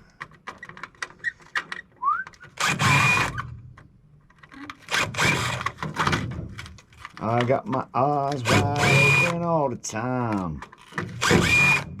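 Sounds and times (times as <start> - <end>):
short rising whistle: 2.0 - 2.6.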